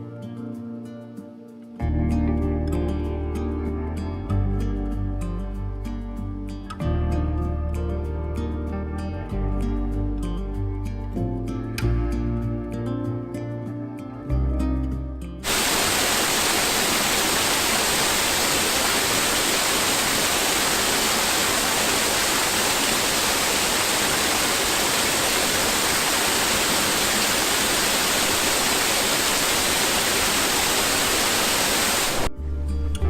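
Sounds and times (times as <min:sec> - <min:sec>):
waterfall rushing: 0:15.4 - 0:32.3.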